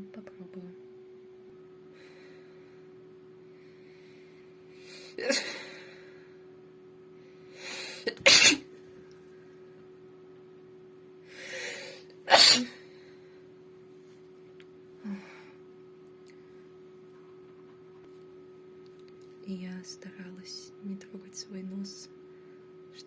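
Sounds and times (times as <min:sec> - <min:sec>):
woman sneezing: 0:05.2 - 0:05.8, 0:08.0 - 0:08.6, 0:12.3 - 0:12.8
sharp intake of breath: 0:11.3 - 0:12.9.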